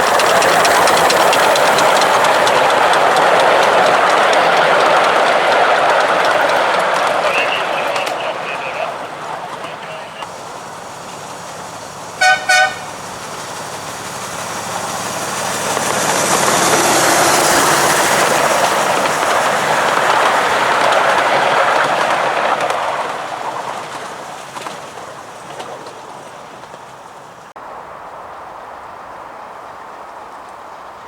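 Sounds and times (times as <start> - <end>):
miniature train passing: 0.0 - 31.0
miniature train horn toots: 12.2 - 13.1.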